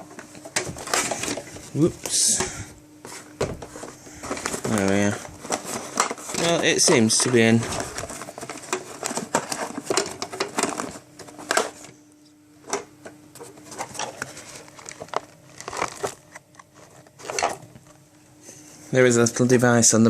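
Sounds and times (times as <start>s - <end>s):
paper bag crinkling: 3.7s - 11.9s, 13.6s - 17.9s.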